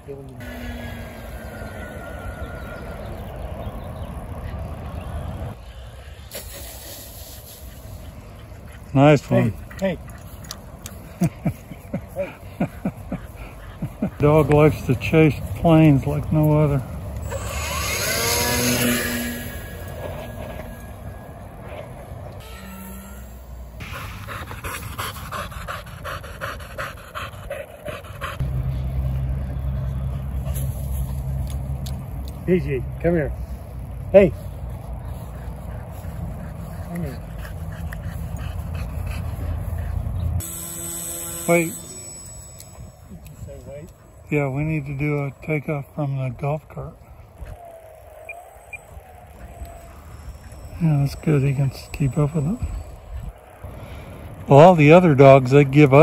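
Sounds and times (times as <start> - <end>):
low engine hum: 0.0 - 8.9, 9.5 - 46.0
low rumbling noise: 0.4 - 8.8
dog panting: 12.2 - 15.2, 23.8 - 28.4, 34.8 - 40.4
model plane motor whine: 17.2 - 21.2, 22.4 - 23.8, 40.4 - 43.4.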